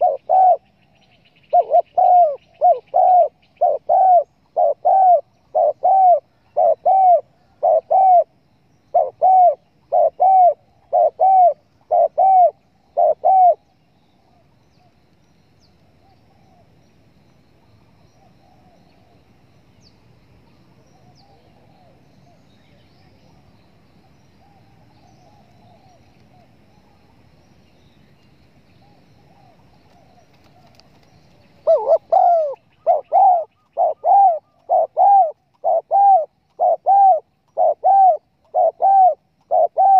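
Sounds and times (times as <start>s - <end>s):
dove cooing: 0.0s - 0.8s, 1.5s - 13.6s, 29.2s - 39.9s.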